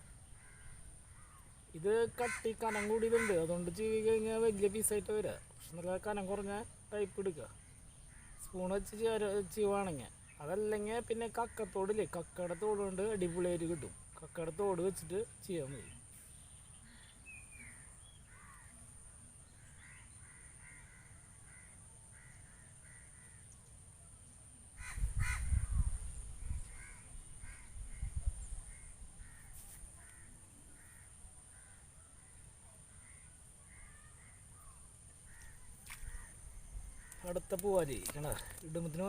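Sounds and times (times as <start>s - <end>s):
crows cawing: 0.0s - 4.0s, 8.0s - 8.6s, 16.8s - 18.8s, 19.6s - 23.6s, 24.8s - 25.8s, 26.6s - 39.0s.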